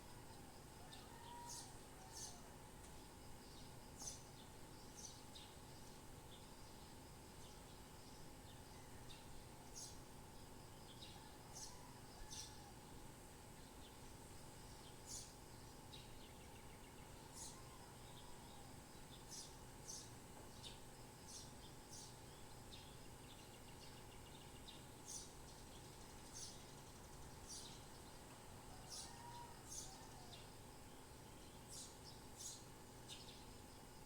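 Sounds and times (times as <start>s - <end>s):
steady background hiss: 0.0s - 34.0s
birds chirping faintly: 13.5s - 34.0s.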